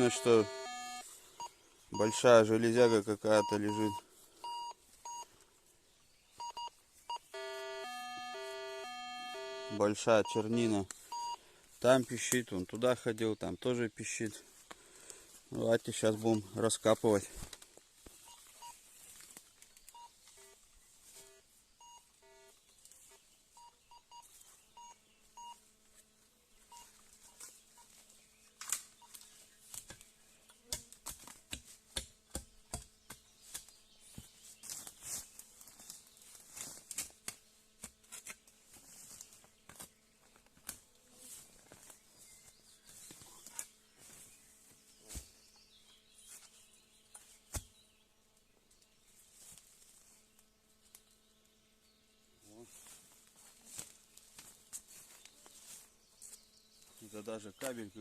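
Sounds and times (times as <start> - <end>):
metal detector short beeps: 0.0 - 5.3, 6.4 - 11.4.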